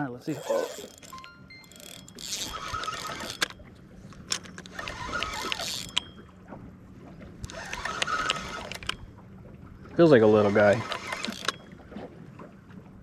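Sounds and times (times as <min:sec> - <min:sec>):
boat motor humming: 0:00.0 - 0:13.0
fishing reel whirring: 0:00.2 - 0:06.2, 0:07.4 - 0:09.1, 0:10.1 - 0:11.7
rod and reel clicks: 0:00.2 - 0:06.3, 0:07.4 - 0:09.2, 0:10.0 - 0:12.0.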